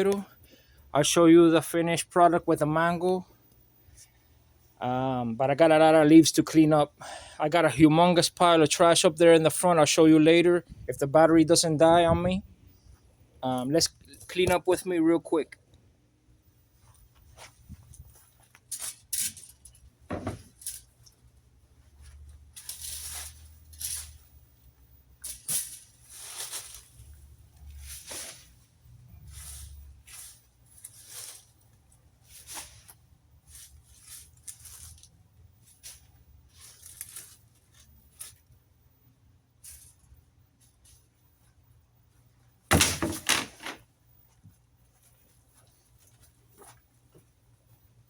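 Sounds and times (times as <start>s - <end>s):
scraping and rustling strokes: 16.8s - 24.6s, 25.2s - 38.6s, 39.6s - 41.3s.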